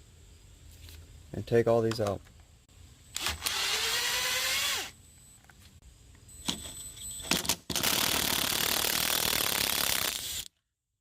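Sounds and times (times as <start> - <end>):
drill motor whine: 3.1 - 5.0.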